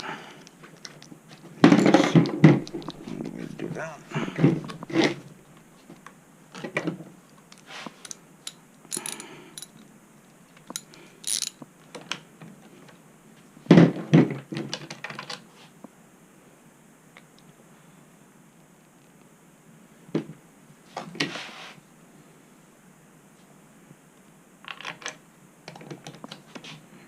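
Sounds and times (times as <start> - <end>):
hand tools and metal parts rattling: 1.6 - 5.3, 8.0 - 9.8, 10.6 - 11.6.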